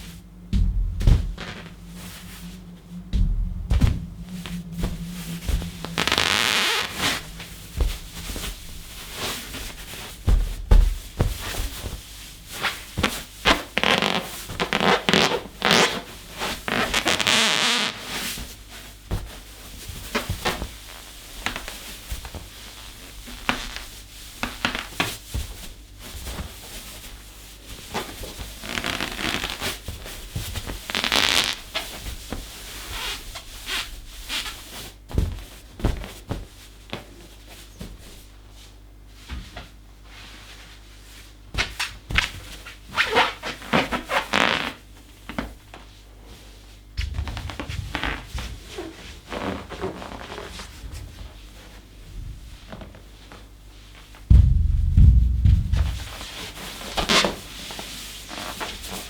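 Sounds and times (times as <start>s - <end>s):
balloon squeaking when rubbed: 3.2s - 11.0s, 13.0s - 18.1s.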